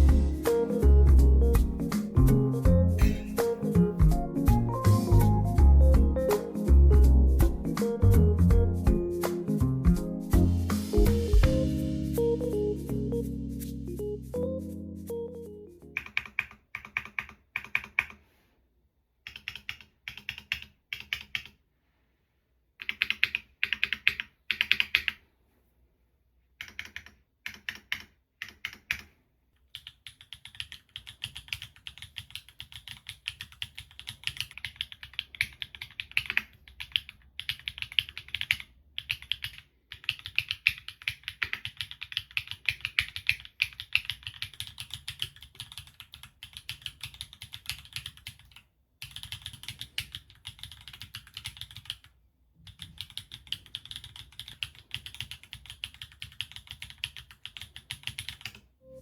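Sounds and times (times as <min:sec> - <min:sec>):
mechanical keyboard typing: 0:15.9 - 0:18.2, 0:19.2 - 0:21.6, 0:22.8 - 0:25.2, 0:26.6 - 0:58.6.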